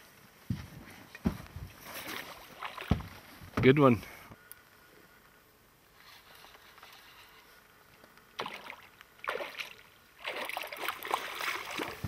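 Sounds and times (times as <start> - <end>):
fish splashing in water: 2.0 - 3.1, 8.4 - 12.0.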